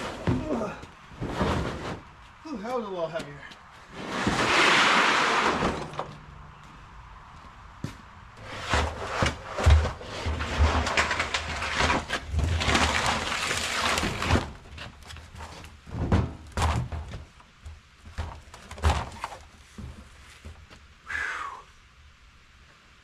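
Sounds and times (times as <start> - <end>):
metal drums scraping: 0.0 - 6.2, 8.4 - 17.1
heavy thuds and knocks: 15.8 - 20.6.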